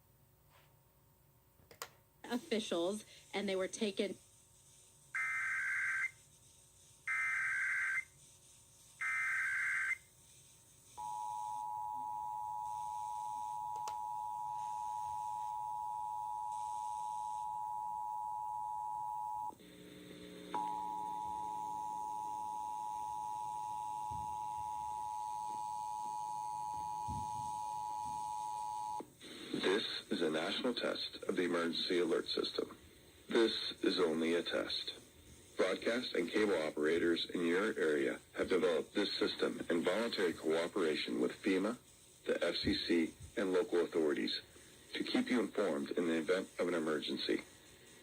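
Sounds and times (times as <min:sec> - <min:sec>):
two-tone attention signal: 0:20.6 - 0:29.0.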